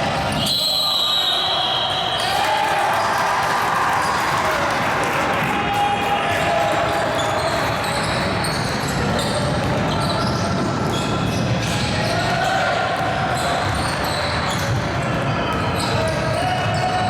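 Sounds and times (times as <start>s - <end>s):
voices echoing in a hall: 0.0s - 17.0s
sneaker squeaks: 0.2s - 2.3s, 7.1s - 17.0s.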